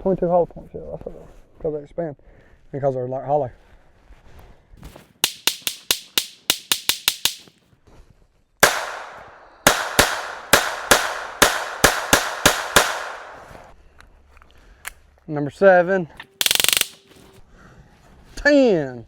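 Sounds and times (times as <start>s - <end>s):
pistol gunshots with ringing echo: 8.6s - 13.7s.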